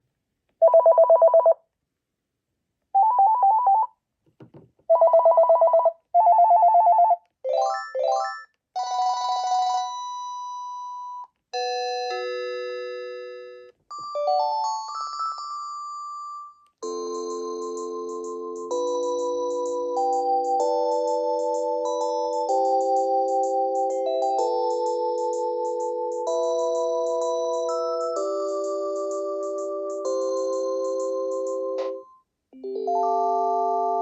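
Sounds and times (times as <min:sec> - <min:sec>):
phone ringtones: 0:00.6 - 0:01.6.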